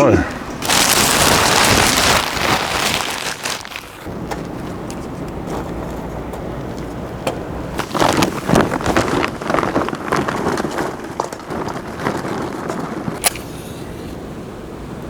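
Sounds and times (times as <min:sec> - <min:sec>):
clatters and knocks: 0:04.2 - 0:13.2.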